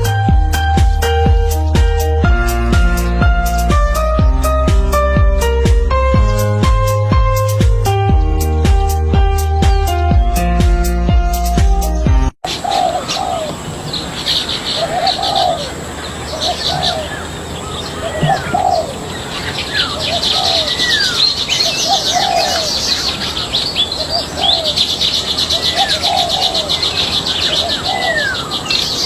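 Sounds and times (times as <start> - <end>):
small birds chirping and trilling: 0.0 - 29.0
low cooing bird call: 12.5 - 29.0.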